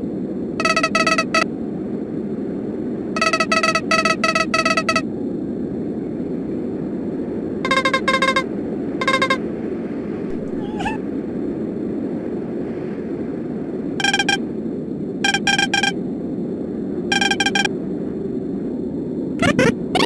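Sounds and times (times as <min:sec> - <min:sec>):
snowstorm wind rushing: 0:00.0 - 0:03.3, 0:05.0 - 0:20.0
short high beeps: 0:00.6 - 0:01.5, 0:03.2 - 0:05.0, 0:07.7 - 0:08.4, 0:09.0 - 0:09.4, 0:14.0 - 0:14.4, 0:15.2 - 0:16.0, 0:17.1 - 0:17.7, 0:19.4 - 0:20.0
wavering squeak: 0:00.6 - 0:01.5, 0:03.2 - 0:05.0, 0:07.7 - 0:08.4, 0:09.0 - 0:09.4, 0:10.3 - 0:11.0, 0:14.0 - 0:14.4, 0:15.3 - 0:16.0, 0:17.1 - 0:17.7, 0:19.4 - 0:20.0.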